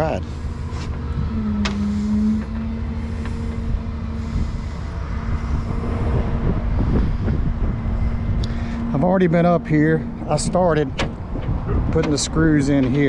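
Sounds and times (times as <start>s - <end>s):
engine rumble: 0.0s - 13.0s
hydraulic hum: 0.0s - 13.0s.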